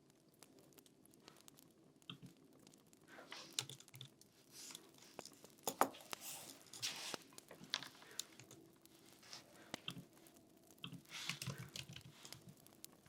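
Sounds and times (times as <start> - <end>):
keyboard typing: 10.8 - 12.4.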